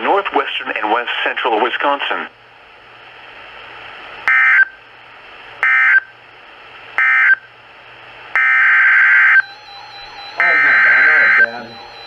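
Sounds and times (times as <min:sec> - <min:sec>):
radio hiss: 0:00.0 - 0:09.4, 0:10.0 - 0:12.0
harsh warbling data bursts: 0:08.4 - 0:12.0.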